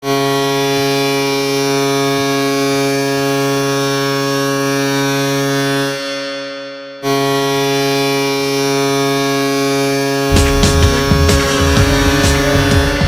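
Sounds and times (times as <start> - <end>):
arena goal horn blast: 7.0 - 13.0.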